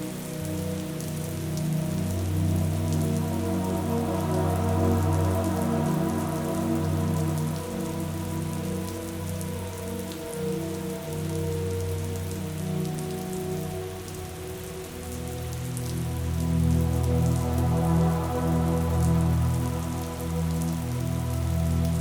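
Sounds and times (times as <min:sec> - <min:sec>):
soft low musical chords: 0:00.0 - 0:22.0
steady rain patter: 0:00.0 - 0:22.0.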